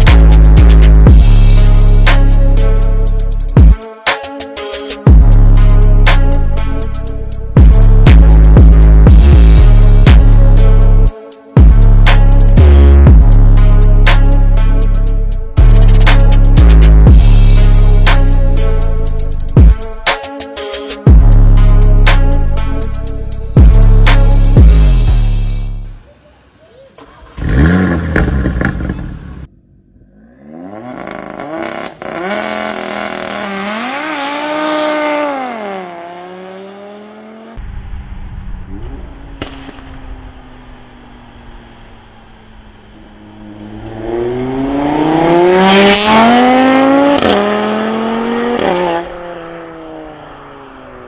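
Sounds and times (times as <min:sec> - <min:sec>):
car engine revving: 0:27.0 - 0:51.0.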